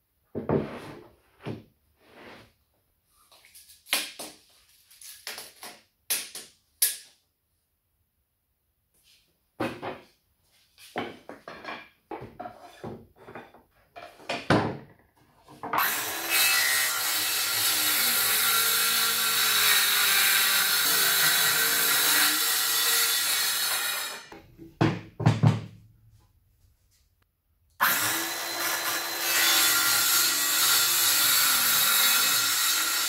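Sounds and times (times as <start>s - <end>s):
wood knocking and clattering: 10.9s - 15.8s, 24.3s - 25.8s
power saw cutting wood: 15.8s - 24.3s, 27.8s - 33.0s.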